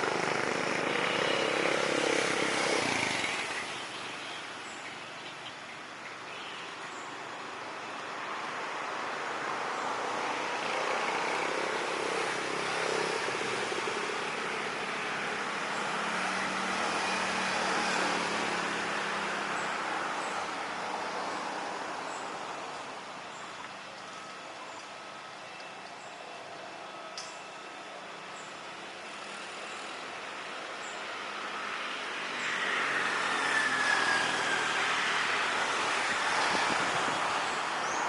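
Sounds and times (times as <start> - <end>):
aircraft engine passing overhead: 10.0 - 23.4, 25.0 - 38.0.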